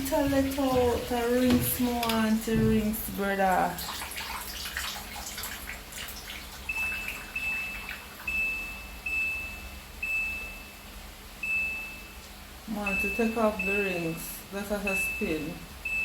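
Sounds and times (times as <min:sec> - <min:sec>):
washing machine water draining: 0:00.0 - 0:10.2.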